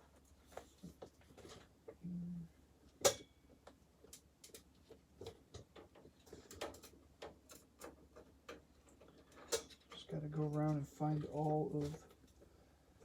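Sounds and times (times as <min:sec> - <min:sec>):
metal parts being handled: 0:05.8 - 0:10.0.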